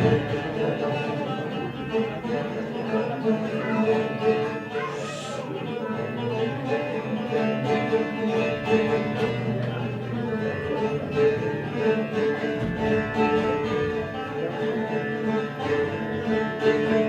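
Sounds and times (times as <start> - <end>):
lute strumming: 0.0 - 17.0.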